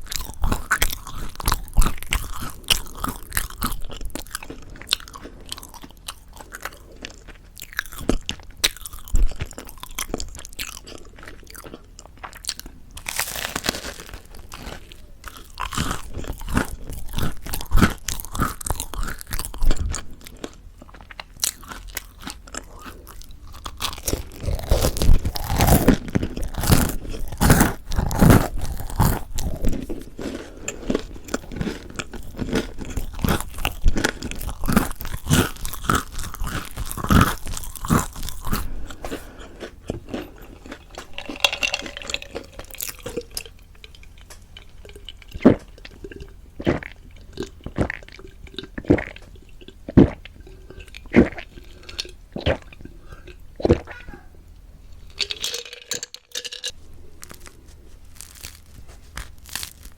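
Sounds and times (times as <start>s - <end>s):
chewing crispy bread: 0.0s - 54.3s, 54.9s - 59.9s.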